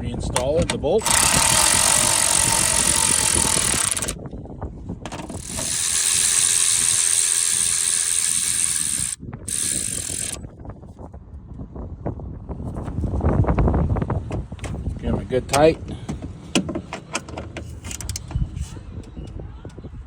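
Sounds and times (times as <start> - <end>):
electric ratchet running down bolts: 1.0 - 4.2, 5.2 - 10.4.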